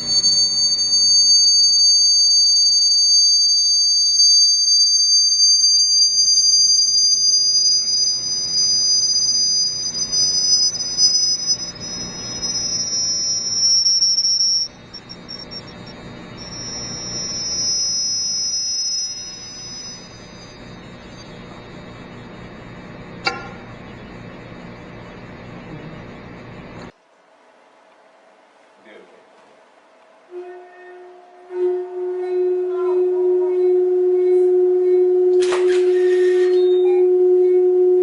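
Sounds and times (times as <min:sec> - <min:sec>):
gliding high-pitched electronic tones: 0:00.0 - 0:24.8.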